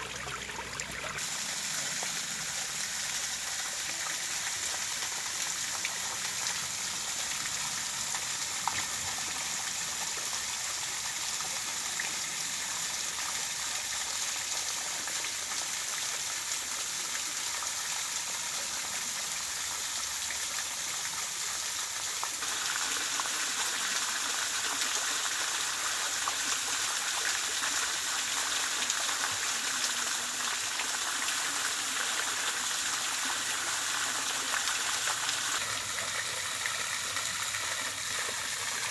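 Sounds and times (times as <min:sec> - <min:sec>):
running water rushing: 0:00.0 - 0:12.6, 0:21.9 - 0:38.9.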